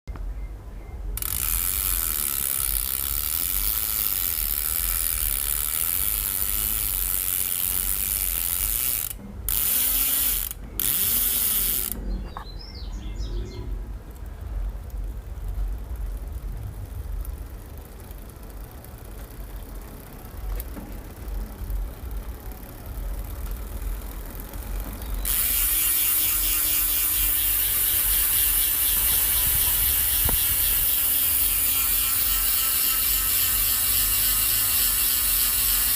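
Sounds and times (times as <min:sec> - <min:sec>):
freehub pawls ratcheting buzz: 0:01.0 - 0:12.4, 0:14.1 - 0:35.9.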